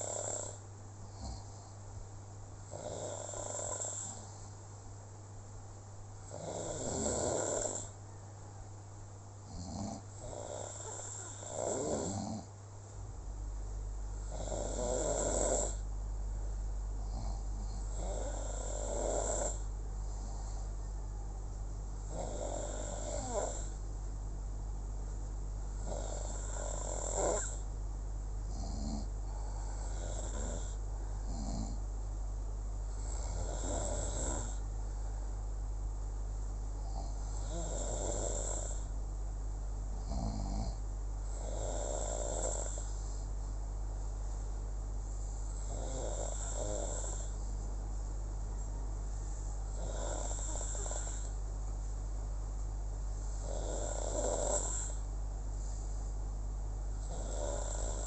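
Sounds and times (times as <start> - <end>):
snoring: 0.0 - 1.7, 2.7 - 4.5, 6.3 - 8.0, 9.5 - 12.5, 14.2 - 15.8, 17.0 - 20.6, 22.1 - 23.8, 25.7 - 27.7, 28.5 - 31.8, 32.9 - 34.6, 36.8 - 39.0, 40.0 - 43.3, 45.4 - 47.5, 49.7 - 51.4, 53.3 - 55.1, 57.0 - 58.0
steady low hum: 0.0 - 58.0.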